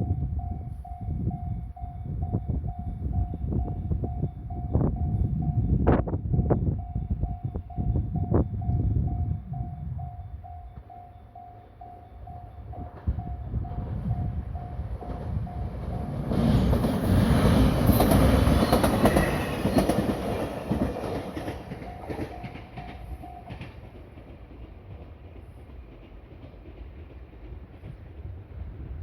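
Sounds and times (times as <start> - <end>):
crossing warning bell ringing: 0.0 - 24.2
train wheels clacking on rails: 7.2 - 29.0.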